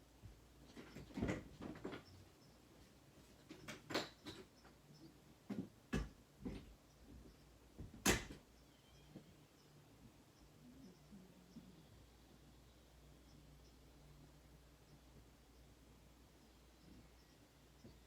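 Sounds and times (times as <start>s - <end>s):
sharp clicks and knocks: 7.8s - 8.5s.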